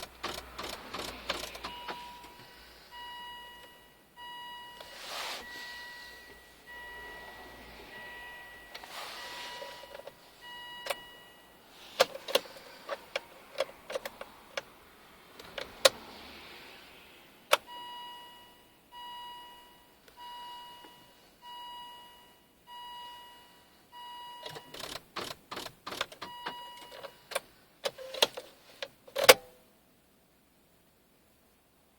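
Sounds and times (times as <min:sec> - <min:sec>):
dashboard warning chime beeping: 0:00.6 - 0:13.2, 0:17.5 - 0:24.9, 0:26.2 - 0:27.3.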